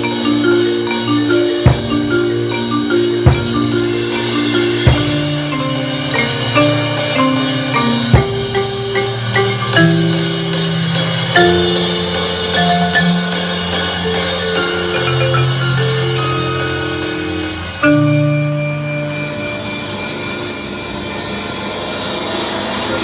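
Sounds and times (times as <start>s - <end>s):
steady clicking beat: 0.0s - 18.2s
band playing held chords: 0.0s - 23.0s
mallet percussion: 0.0s - 23.0s.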